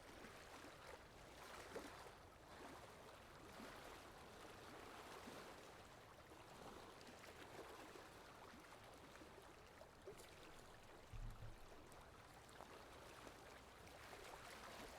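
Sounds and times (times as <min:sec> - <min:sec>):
wind: 0:00.0 - 0:14.9
water lapping: 0:06.3 - 0:14.9.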